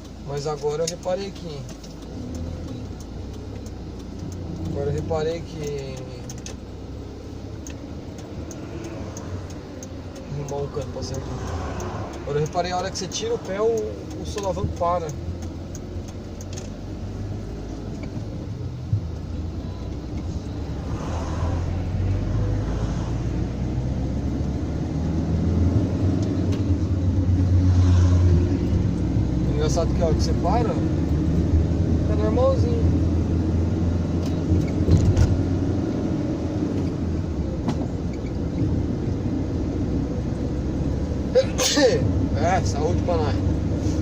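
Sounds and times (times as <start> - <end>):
van engine and road rumble: 0.0 - 44.0.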